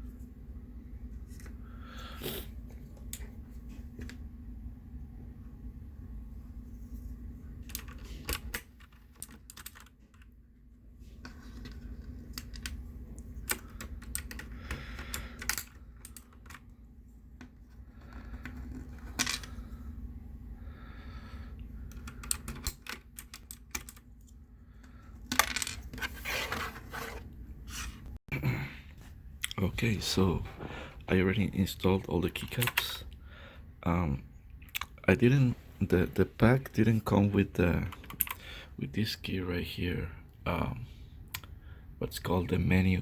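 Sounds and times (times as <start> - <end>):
low steady hum: 0.0 - 43.0
keycaps clicking: 7.7 - 10.3, 12.3 - 16.6, 21.9 - 24.0, 37.8 - 38.4.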